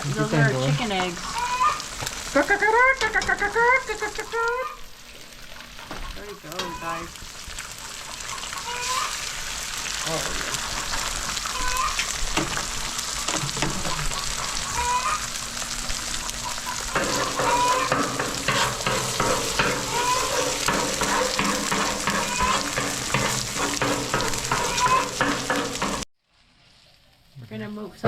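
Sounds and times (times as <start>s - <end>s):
eggs sizzling on a griddle: 0.0s - 28.0s
metal spatula scraping and tapping: 16.9s - 26.1s.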